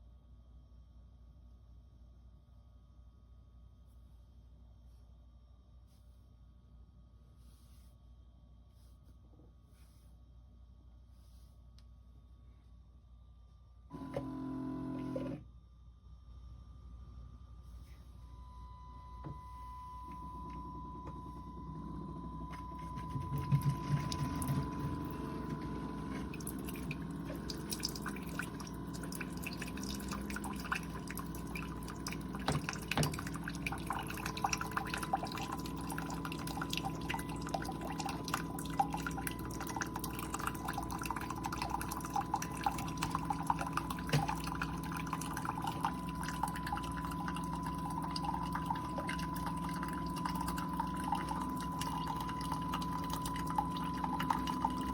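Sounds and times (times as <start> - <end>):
coffee maker pump whine: 13.9 - 15.5, 17.8 - 54.9
coffee streaming into cup: 22.5 - 54.9.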